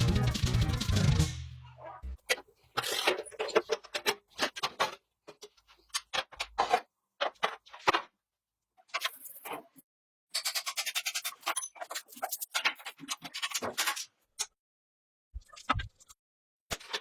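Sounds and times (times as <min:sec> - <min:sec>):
background music: 0:00.0 - 0:02.2.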